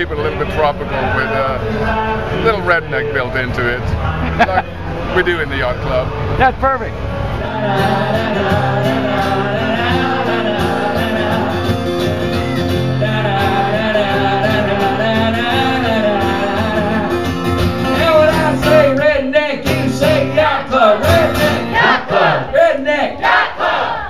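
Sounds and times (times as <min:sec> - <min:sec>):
guitar: 0:00.0 - 0:22.7
man singing country song: 0:07.4 - 0:23.0.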